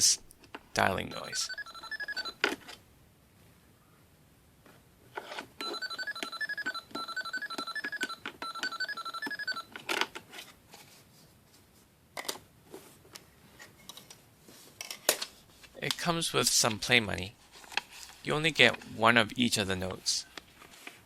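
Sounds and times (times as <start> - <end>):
toy cash register beeps: 1.1 - 2.4, 5.6 - 9.8.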